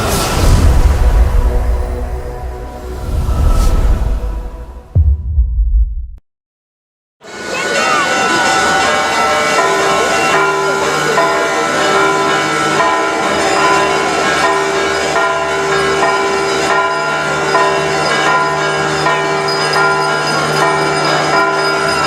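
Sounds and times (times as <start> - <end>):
church bells ringing: 7.2 - 22.0.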